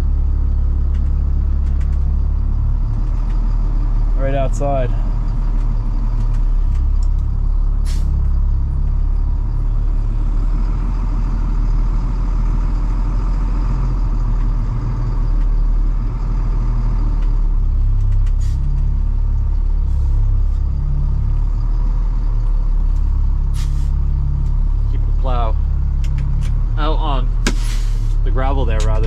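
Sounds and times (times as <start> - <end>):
truck engine running: 0.0 - 29.0
short hisses: 23.5 - 24.0, 27.5 - 28.2.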